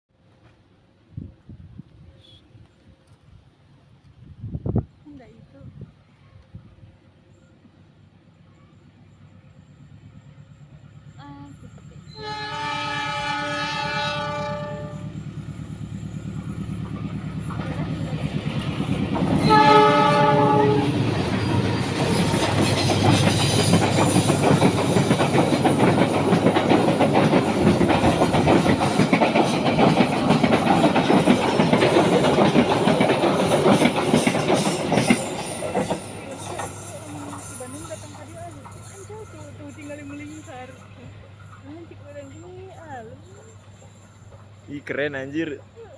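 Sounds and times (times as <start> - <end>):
locomotive engine: 7.8 - 45.9
train horn blasts: 11.3 - 15.3, 19.4 - 21.0
train wheels clattering on rails: 13.8 - 45.1.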